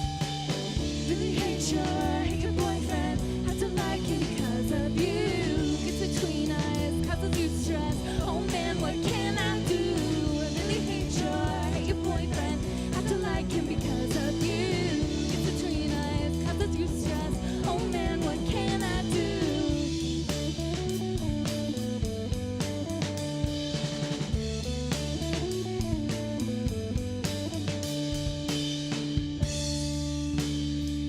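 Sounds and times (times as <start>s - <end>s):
bass guitar: 0.0s - 31.0s
drum kit: 0.0s - 31.0s
electric guitar: 0.0s - 31.0s
person singing: 1.0s - 20.2s.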